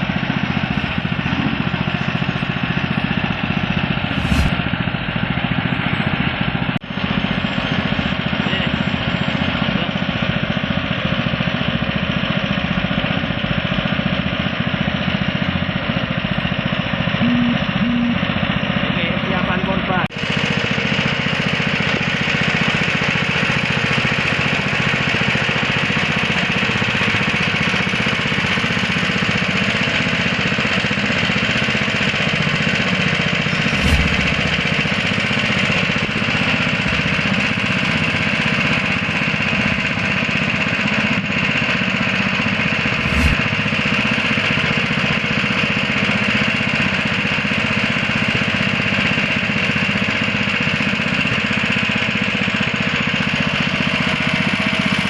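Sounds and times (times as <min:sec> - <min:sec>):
machine droning: 0:00.0 - 0:10.8, 0:14.3 - 0:20.0, 0:32.4 - 0:44.8.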